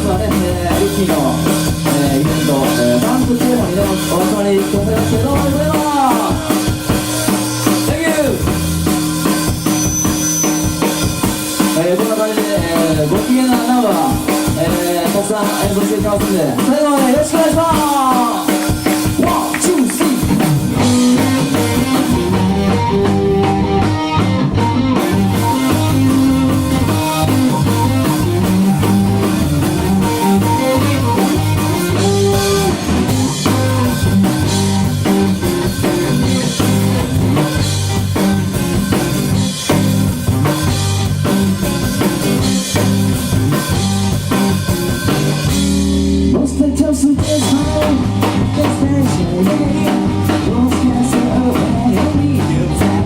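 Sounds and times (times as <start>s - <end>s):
live rock band playing: 0.0s - 53.0s.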